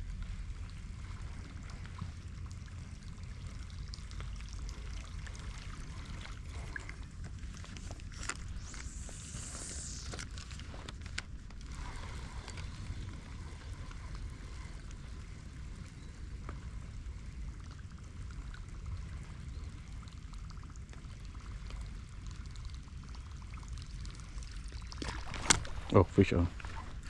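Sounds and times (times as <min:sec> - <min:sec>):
steady rain hiss: 0:07.4 - 0:17.9, 0:25.4 - 0:27.0.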